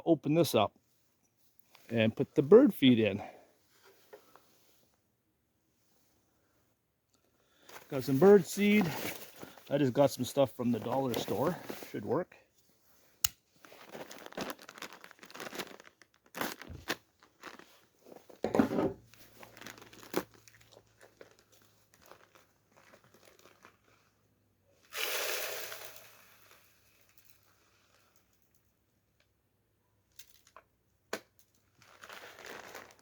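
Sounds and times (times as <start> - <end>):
plastic bag tearing: 13.6 - 17.9, 19.2 - 24.0, 31.7 - 33.0
plastic bag crinkling: 13.6 - 18.4, 19.0 - 24.2, 31.7 - 33.0
seed pouring into feeder: 24.9 - 27.4.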